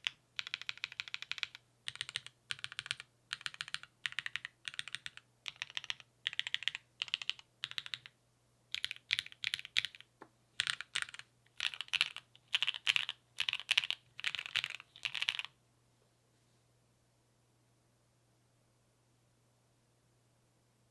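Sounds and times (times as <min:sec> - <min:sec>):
mechanical keyboard typing: 0:00.0 - 0:15.5.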